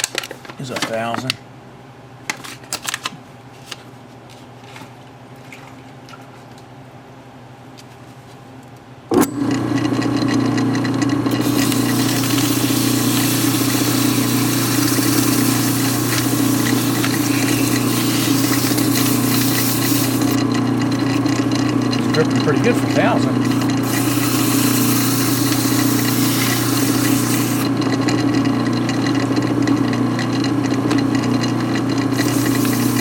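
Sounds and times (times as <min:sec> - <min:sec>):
electric motor humming: 0:09.6 - 0:33.0.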